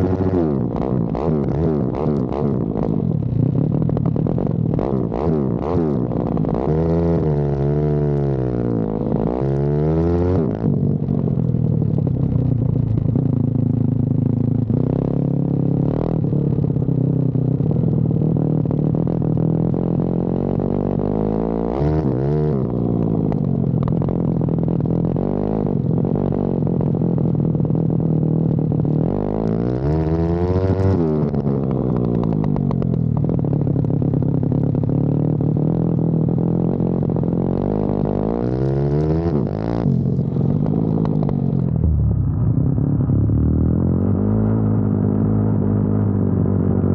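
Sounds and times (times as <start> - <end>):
motorbike engine revving: 29.0 - 33.8.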